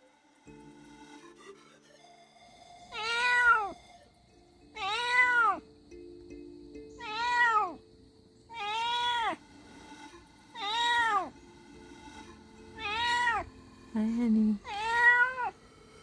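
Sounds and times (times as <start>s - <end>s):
cat meowing: 2.9s - 3.8s, 4.8s - 5.6s, 7.0s - 7.8s, 8.5s - 9.4s, 10.6s - 11.4s, 12.8s - 13.5s, 14.6s - 15.6s.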